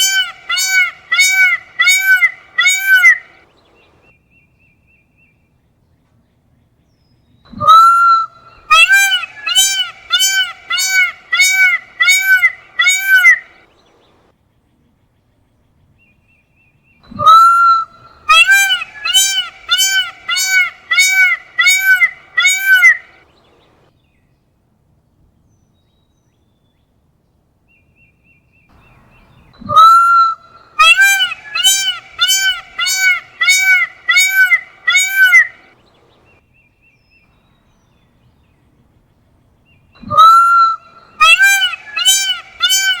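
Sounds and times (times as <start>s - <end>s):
peacock calling: 0.0s - 4.1s, 7.5s - 14.2s, 17.0s - 23.9s, 28.7s - 36.4s, 39.6s - 43.0s.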